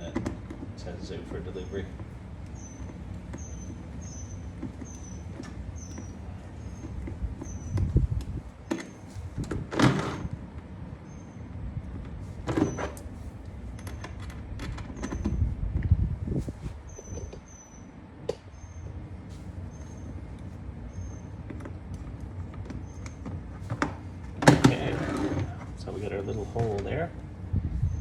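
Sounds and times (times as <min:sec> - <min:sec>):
knocks and clunks of plastic parts: 0:22.6 - 0:25.5.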